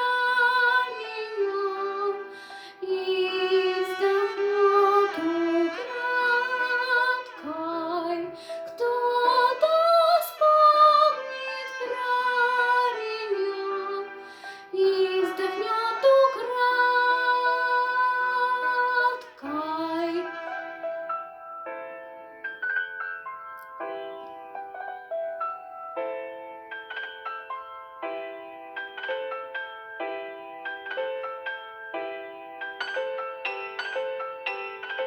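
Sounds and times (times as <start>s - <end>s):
solo melody with vibrato: 0.0s - 35.0s.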